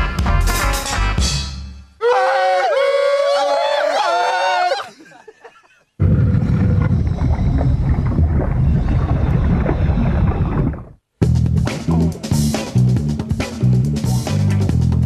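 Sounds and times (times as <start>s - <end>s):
deep rumbling noise: 6.0s - 12.2s.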